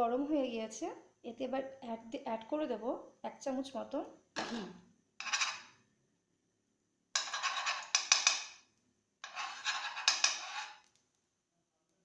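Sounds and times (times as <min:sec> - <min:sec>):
spoon scraping a pan: 0:04.4 - 0:05.8, 0:07.2 - 0:08.6, 0:09.2 - 0:10.9.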